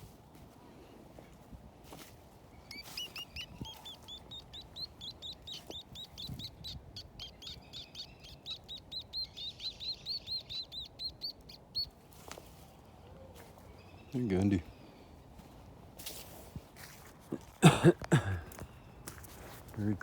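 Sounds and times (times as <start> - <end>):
bird singing rapid notes: 2.6 - 11.9.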